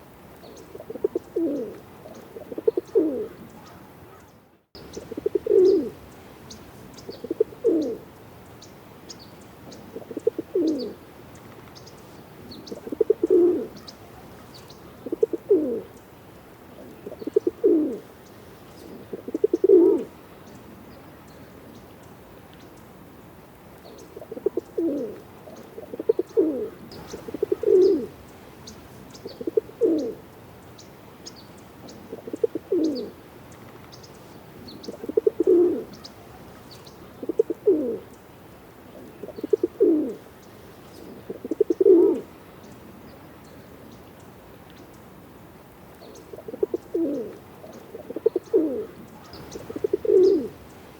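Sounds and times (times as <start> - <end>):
pigeon cooing: 0.7 - 6.0, 7.1 - 8.0, 9.9 - 11.0, 12.6 - 15.9, 16.8 - 18.1, 18.8 - 20.1, 24.2 - 28.2, 29.2 - 30.2, 32.0 - 33.2, 34.6 - 38.1, 39.0 - 40.2, 41.0 - 42.3, 46.3 - 50.6.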